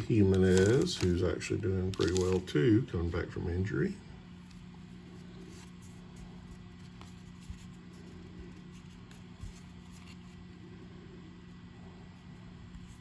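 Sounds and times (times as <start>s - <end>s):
trading cards rustling: 0.0s - 3.2s, 4.4s - 10.6s
low steady hum: 0.0s - 13.0s.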